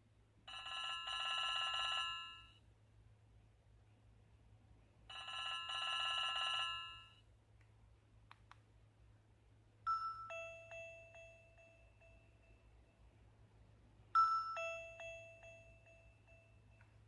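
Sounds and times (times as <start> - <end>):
trilling telephone bell ringtone: 0.5 - 2.6, 5.1 - 7.2, 9.9 - 13.0, 14.2 - 16.8
chiming ringtone: 9.9 - 13.2, 14.2 - 17.0.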